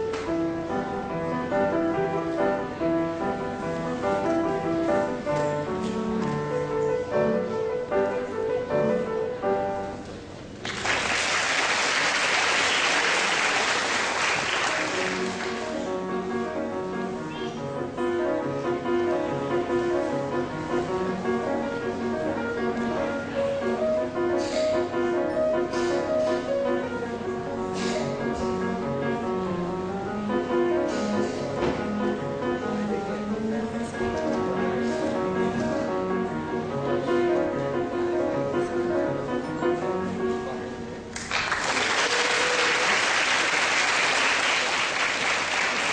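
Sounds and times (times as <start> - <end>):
solo piano: 0.0 - 10.7, 12.4 - 41.2
audience applauding: 10.6 - 15.9, 41.2 - 45.9.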